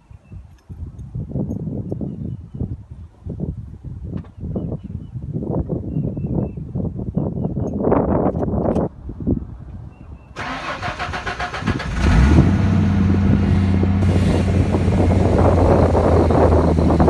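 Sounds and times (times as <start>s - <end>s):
car engine starter cranking: 10.4s - 13.4s
car engine idling: 10.4s - 17.0s.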